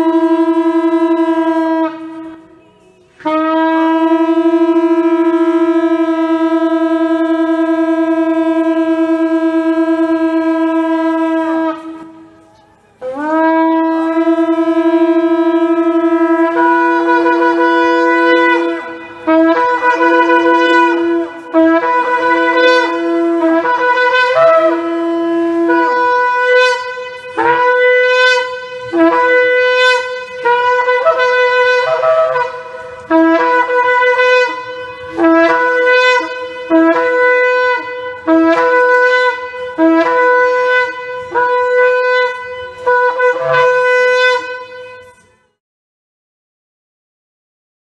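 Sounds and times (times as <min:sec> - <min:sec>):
shofar blasts: 0:00.0 - 0:45.6.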